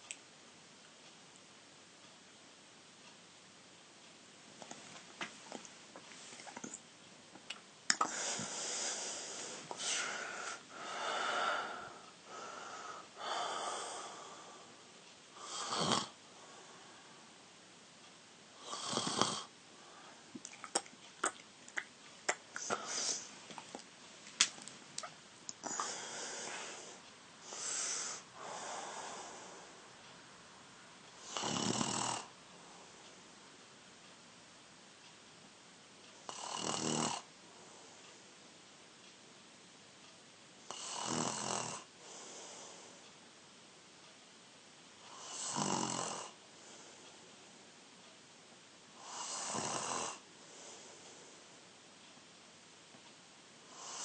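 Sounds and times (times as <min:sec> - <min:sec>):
airy breaths: 0:08.0 - 0:14.8, 0:22.6 - 0:23.4, 0:25.6 - 0:29.8
boy snoring: 0:15.4 - 0:16.2, 0:18.6 - 0:19.5, 0:25.6 - 0:29.5, 0:31.2 - 0:32.3, 0:36.3 - 0:37.3, 0:40.7 - 0:41.9, 0:45.1 - 0:46.4, 0:49.0 - 0:50.2, 0:53.7 - 0:54.0.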